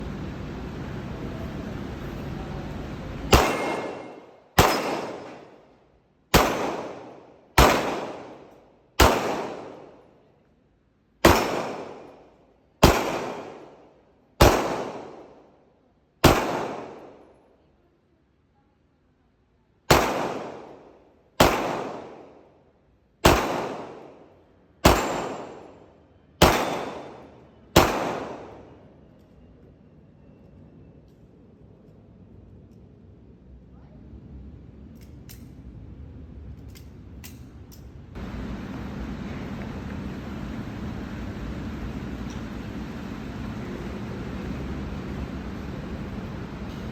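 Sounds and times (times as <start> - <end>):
pistol shots: 3.3 - 5.6, 6.3 - 10.0, 11.2 - 15.4, 16.2 - 17.2, 19.9 - 22.4, 23.2 - 25.8, 26.4 - 28.8.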